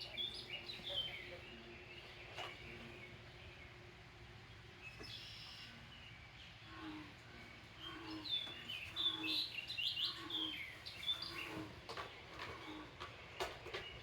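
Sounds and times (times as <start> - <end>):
birds chirping and singing: 0.0 - 3.8, 7.4 - 11.7.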